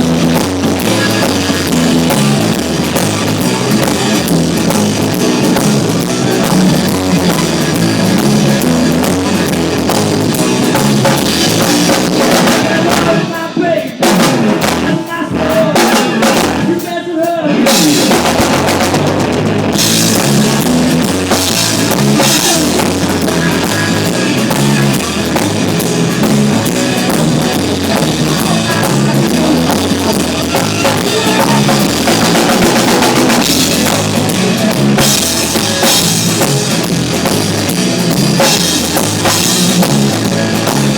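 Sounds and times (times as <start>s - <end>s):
drum kit: 0.0s - 40.9s
guitars: 0.0s - 40.9s
rock band playing loud: 0.0s - 40.9s.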